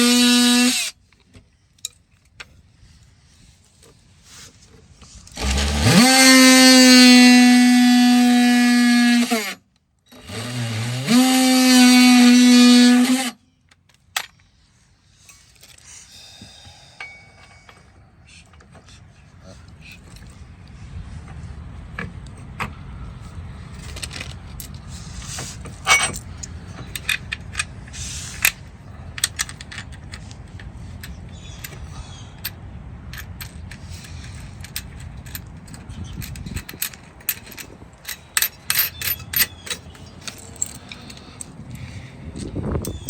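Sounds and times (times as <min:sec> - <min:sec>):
metal tools clinking: 0:16.9 - 0:18.7, 0:23.8 - 0:42.0.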